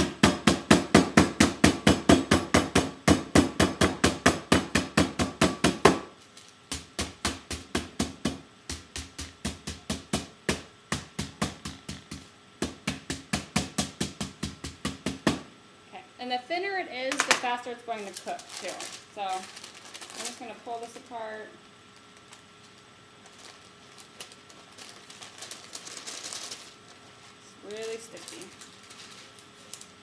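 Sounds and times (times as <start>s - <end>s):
mallet pounding meat: 0.0s - 6.1s, 6.7s - 15.5s.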